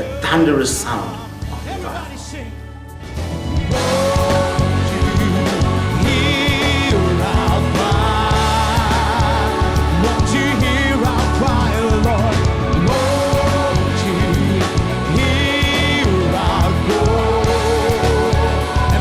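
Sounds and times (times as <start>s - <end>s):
worship band music: 0.0s - 19.0s.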